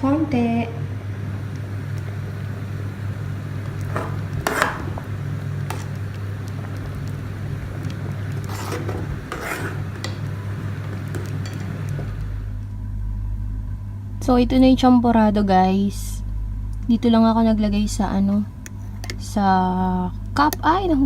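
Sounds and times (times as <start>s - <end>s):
low hum: 0.0s - 21.0s
spoon scraping a pot: 3.7s - 6.0s, 8.3s - 11.8s.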